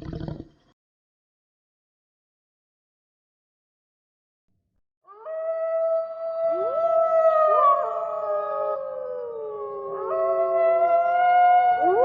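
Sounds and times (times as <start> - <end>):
dogs howling in chorus: 5.1 - 12.0.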